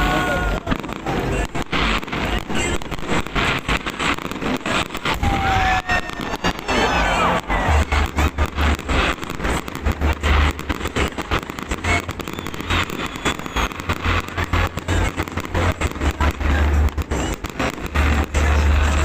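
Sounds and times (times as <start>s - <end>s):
fireworks bangs and crackling: 0.0s - 19.0s
deep low rumble: 6.7s - 12.8s.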